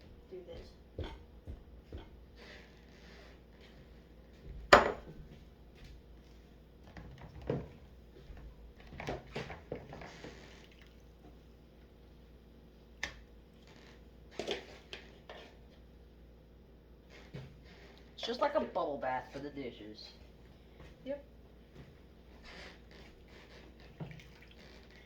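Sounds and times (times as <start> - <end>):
dishes clinking in water: 4.7 - 5.2
soapy water sloshing: 9.6 - 12.0, 22.5 - 25.0.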